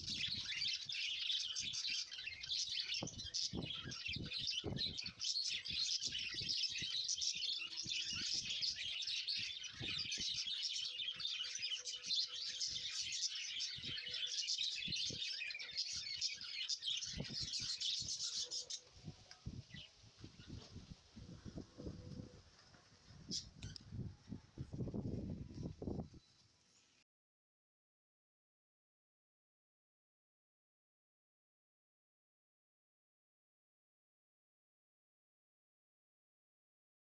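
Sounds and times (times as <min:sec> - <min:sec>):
small birds chirping and twittering: 0:00.0 - 0:27.0.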